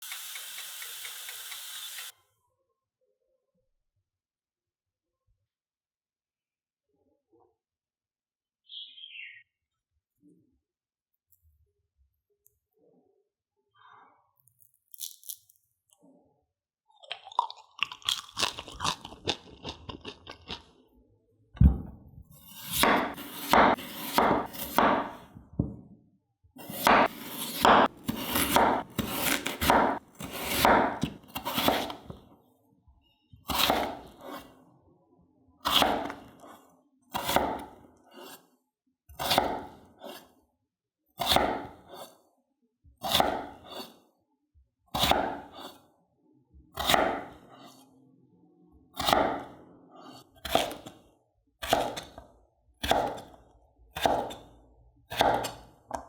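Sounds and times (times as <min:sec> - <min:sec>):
heavy thump: 0:21.6 - 0:22.3
scraping potatoes: 0:26.6 - 0:32.1.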